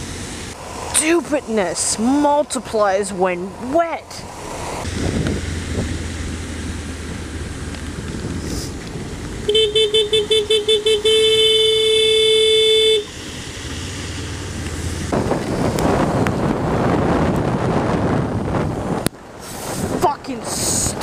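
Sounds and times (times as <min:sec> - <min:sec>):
low engine hum: 0:00.0 - 0:20.3
road and wind noise: 0:00.0 - 0:21.0
vehicle horn tooting: 0:09.5 - 0:13.1.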